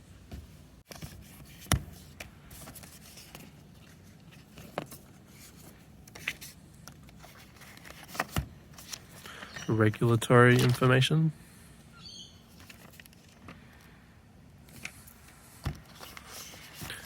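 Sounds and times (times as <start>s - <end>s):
paper rustling and scraping: 0.9s - 10.9s, 12.5s - 13.6s, 14.6s - 17.0s.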